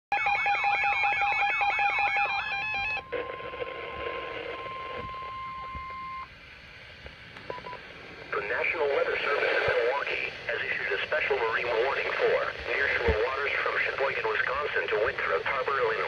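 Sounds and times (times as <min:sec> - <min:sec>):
radio hiss: 0:01.8 - 0:16.0
brief beep: 0:07.5 - 0:07.8.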